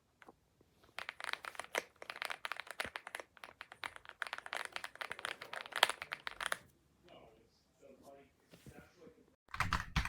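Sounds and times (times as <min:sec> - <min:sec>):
mechanical keyboard typing: 0:01.0 - 0:06.6, 0:09.5 - 0:10.0.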